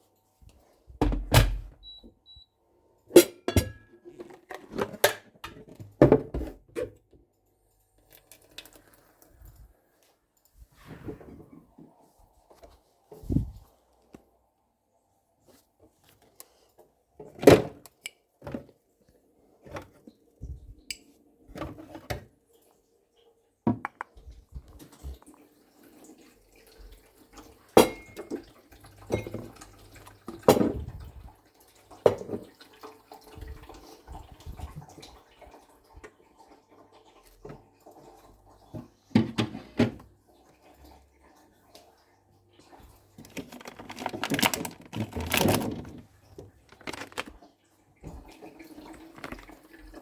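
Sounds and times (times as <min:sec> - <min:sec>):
dishes and utensils clinking: 0:03.2 - 0:05.8, 0:27.8 - 0:28.5.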